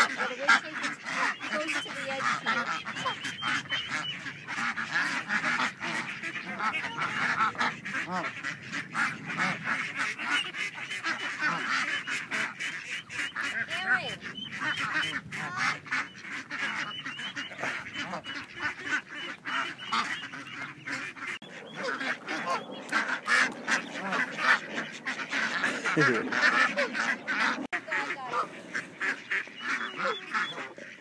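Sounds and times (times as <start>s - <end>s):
ducks quacking and honking: 0.0s - 31.0s.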